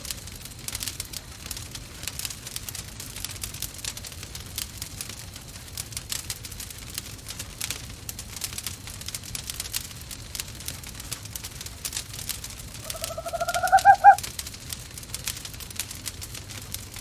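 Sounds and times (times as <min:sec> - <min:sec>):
wood fire crackling: 0:00.0 - 0:17.0
owl call: 0:12.8 - 0:14.2.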